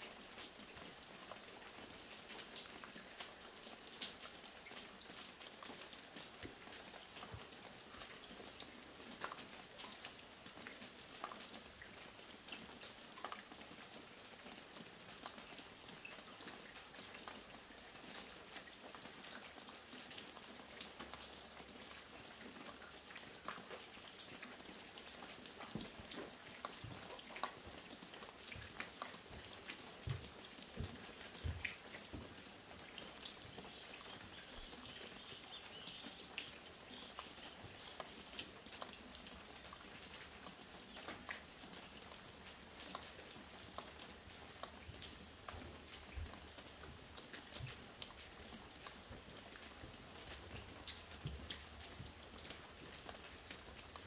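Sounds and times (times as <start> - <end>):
water dripping from roof: 0.0 - 54.0
light rain hissing: 1.4 - 8.2
heavy drips: 20.8 - 54.0.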